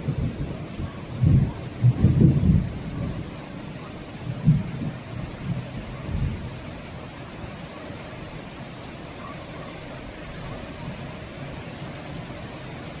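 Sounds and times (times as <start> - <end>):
low thunder rumble: 0.0 - 3.4
steady rain: 0.0 - 13.0.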